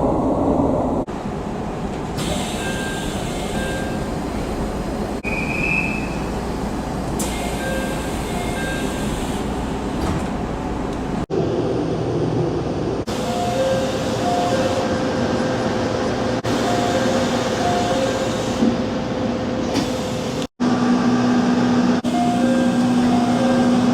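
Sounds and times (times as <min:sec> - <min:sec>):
diesel railcar at station: 0:00.0 - 0:23.9
train door chime beeps: 0:02.5 - 0:04.1, 0:07.2 - 0:09.3, 0:16.5 - 0:18.4, 0:22.1 - 0:23.9.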